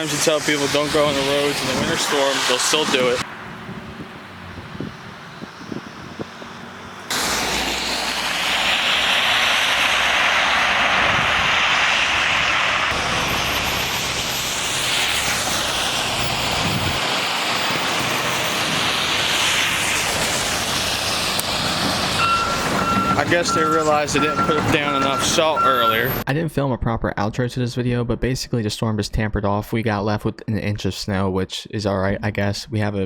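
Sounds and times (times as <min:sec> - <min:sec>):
truck loud steady hiss: 0:00.0 - 0:03.3, 0:07.1 - 0:26.2
truck engine rumble: 0:00.0 - 0:26.2.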